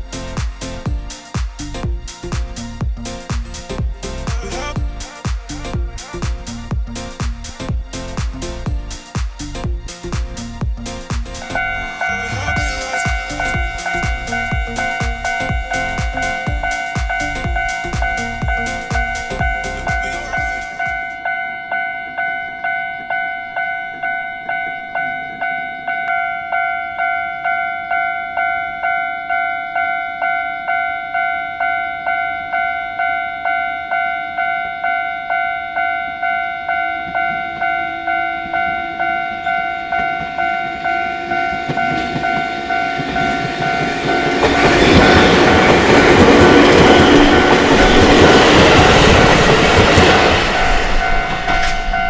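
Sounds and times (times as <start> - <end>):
train wheels rumbling on rails: 0.0 - 21.2, 39.6 - 52.0
level-crossing warning bell ringing: 11.5 - 52.0.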